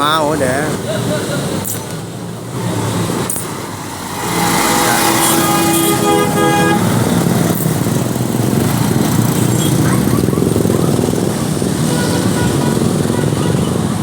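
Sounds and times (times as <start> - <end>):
bus engine running: 0.0 - 14.0
bus musical horn chord: 3.8 - 7.6.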